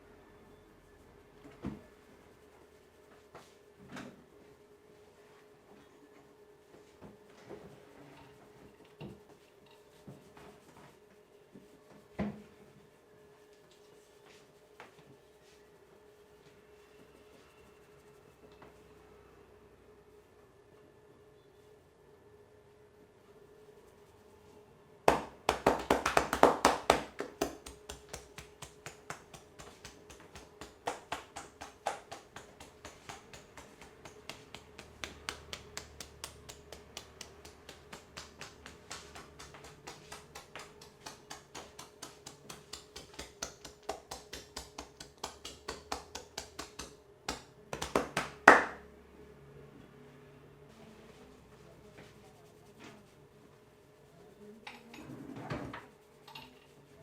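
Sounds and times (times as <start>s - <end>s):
hands tapping on a head: 25.1s - 48.8s.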